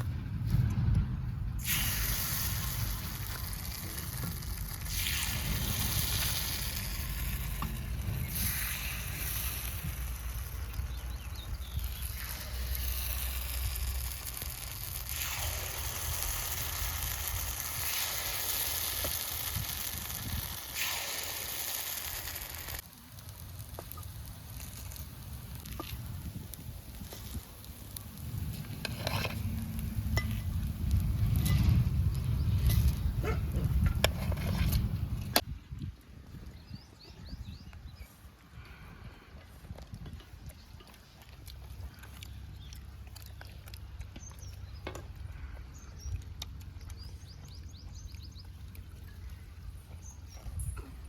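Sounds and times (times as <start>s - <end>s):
low rumble: 0.0s - 17.5s, 24.6s - 35.4s
hot oil sizzling: 1.6s - 33.2s.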